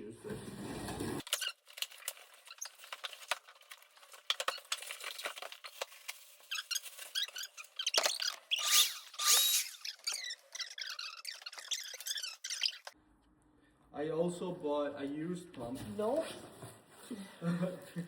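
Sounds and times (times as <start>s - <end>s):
packaging rustling: 1.2s - 10.4s
loud scraping rips: 4.3s - 13.0s.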